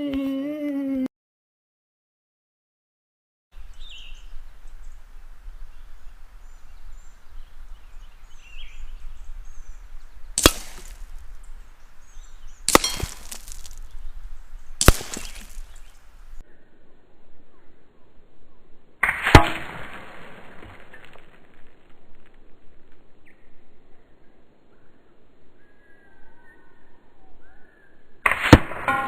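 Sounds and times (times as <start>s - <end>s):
air rifle shots: 10.4s - 11.3s, 12.7s - 13.8s, 14.8s - 15.8s, 28.3s - 29.0s.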